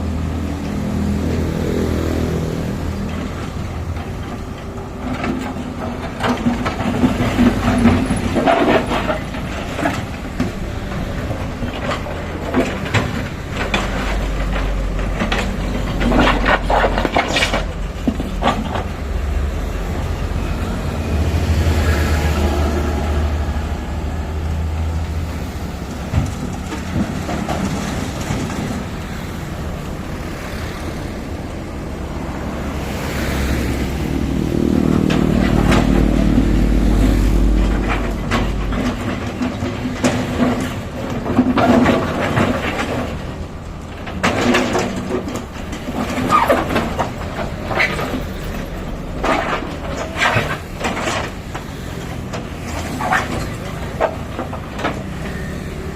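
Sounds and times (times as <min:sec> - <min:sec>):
diesel construction machinery rumbling: 0:00.0 - 0:55.9
metallic knocks and clanks: 0:32.8 - 0:55.9.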